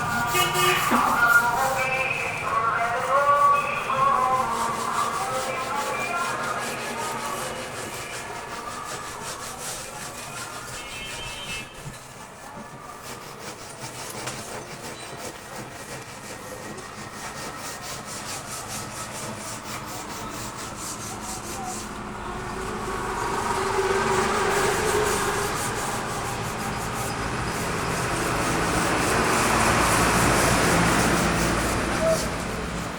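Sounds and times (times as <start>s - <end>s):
wood being sanded by hand: 0.0s - 32.9s.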